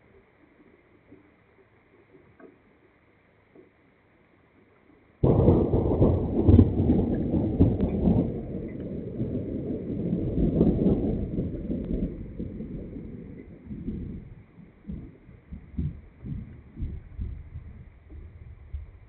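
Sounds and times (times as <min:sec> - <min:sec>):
loud low rumble: 0:05.2 - 0:19.0.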